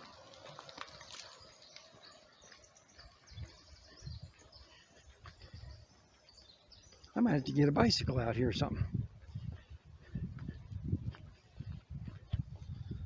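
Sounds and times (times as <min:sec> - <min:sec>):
small birds chirping: 0:00.0 - 0:13.0
soft low thumps: 0:08.5 - 0:13.0.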